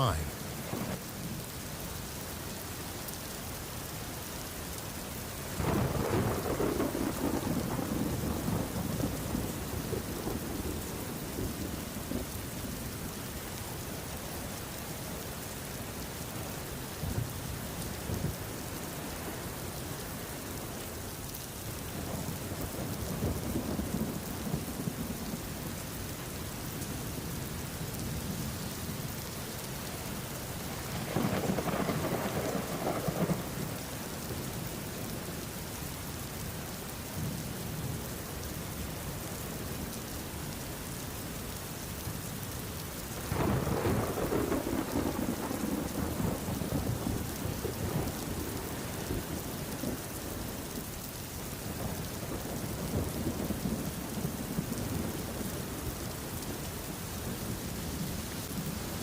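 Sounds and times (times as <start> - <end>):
steady rain falling: 0.0 - 59.0
thunder rumbling: 5.6 - 12.3, 30.7 - 33.8, 43.2 - 50.5.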